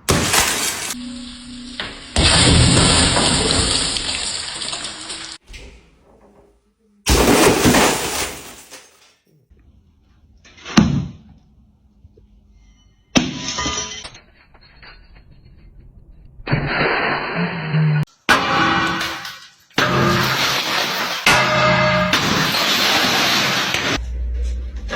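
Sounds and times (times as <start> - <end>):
glass shattering: 0.0 - 5.4, 7.1 - 9.0, 13.2 - 15.4, 18.3 - 24.0.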